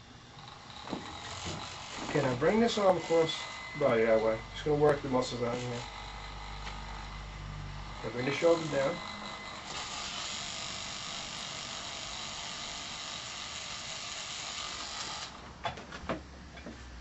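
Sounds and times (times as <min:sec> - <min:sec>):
massager buzzing: 0:00.0 - 0:15.5.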